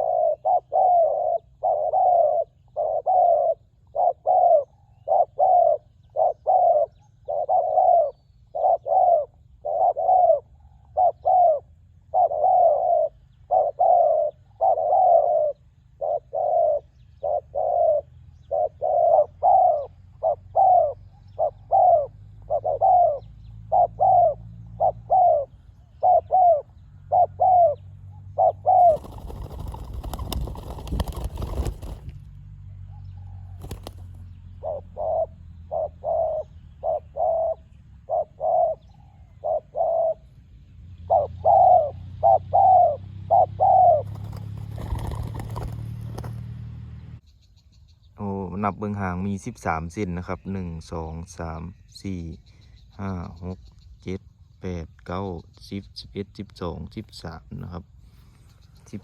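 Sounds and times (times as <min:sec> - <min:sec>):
doves cooing: 0:00.0 - 0:40.4, 0:41.1 - 0:46.4.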